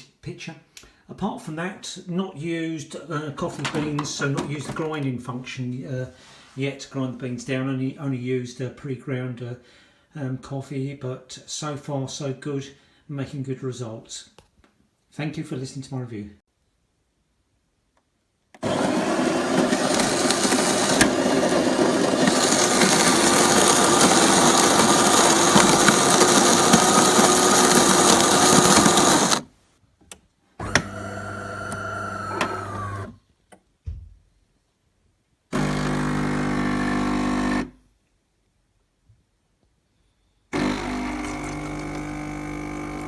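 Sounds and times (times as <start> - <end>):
coffee machine buzzing: 18.6 - 29.4, 30.6 - 33.1, 35.6 - 37.7, 40.6 - 43.0
coffee machine running: 18.6 - 29.4, 30.6 - 33.1, 35.6 - 37.7, 40.6 - 43.0.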